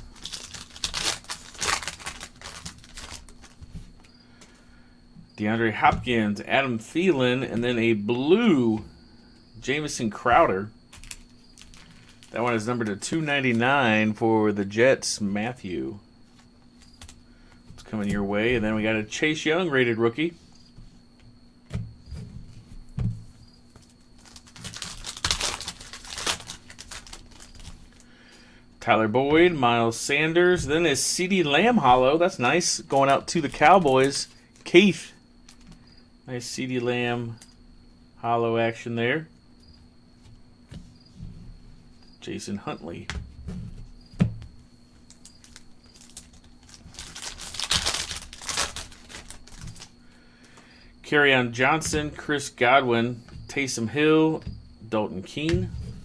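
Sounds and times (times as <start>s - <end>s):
foil wrapper torn open: 0.0s - 3.6s, 10.9s - 12.4s, 24.2s - 28.1s, 45.1s - 50.0s
trading cards handled on table: 10.9s - 13.1s.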